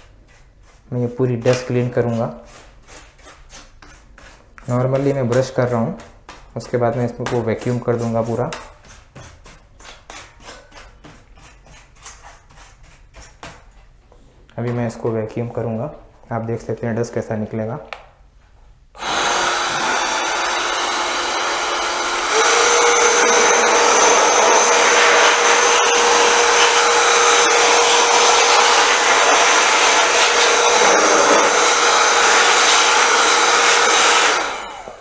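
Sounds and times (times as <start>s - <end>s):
small vacuum cleaner whining: 19.0s - 35.0s.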